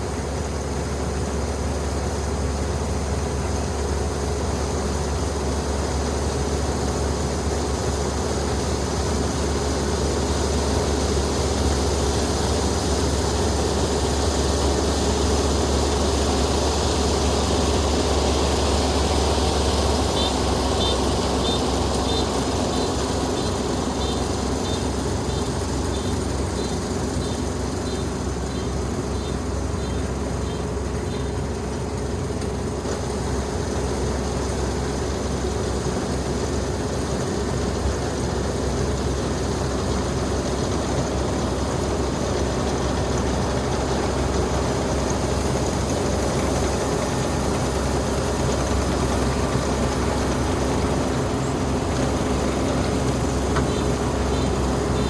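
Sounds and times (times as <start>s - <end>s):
combine harvester engine drone: 0.0s - 55.0s
faint high chirp: 20.1s - 31.3s.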